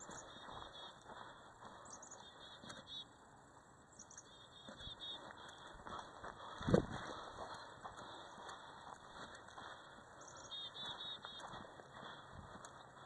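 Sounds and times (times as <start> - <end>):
faint high chirps: 0.0 - 6.0, 10.1 - 13.0
faint soft footsteps: 0.0 - 13.0.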